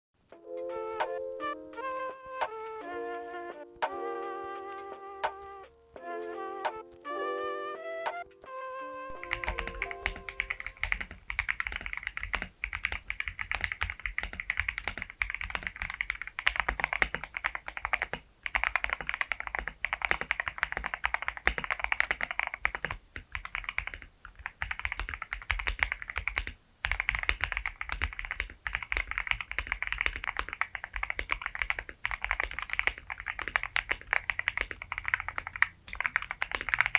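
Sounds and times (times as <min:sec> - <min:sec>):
mechanical keyboard typing: 0:09.1 - 0:36.9.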